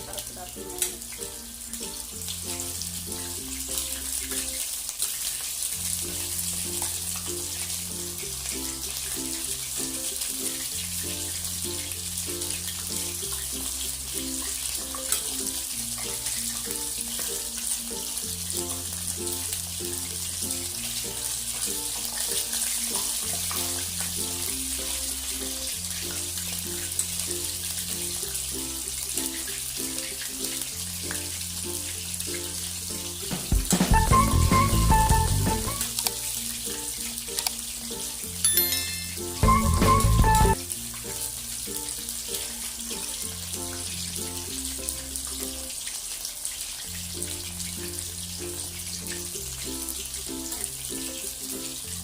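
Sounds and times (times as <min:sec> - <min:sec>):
background music: 0:00.0 - 0:04.7, 0:05.8 - 0:45.7, 0:46.9 - 0:52.0
prawns sizzling in hot oil: 0:00.0 - 0:52.0
background music with bass line: 0:30.7 - 0:36.0, 0:39.3 - 0:41.5.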